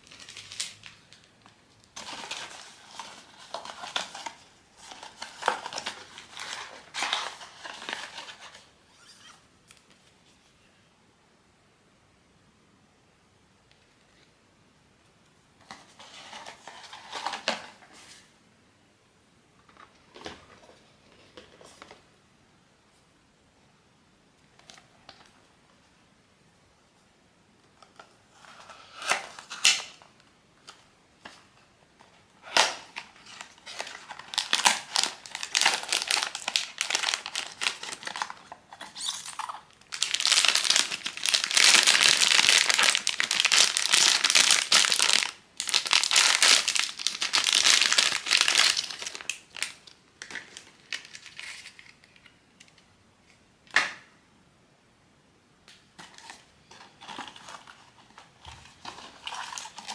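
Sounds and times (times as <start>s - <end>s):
plastic packaging crinkling and tearing: 0.0s - 9.1s, 32.4s - 52.8s, 56.0s - 59.9s.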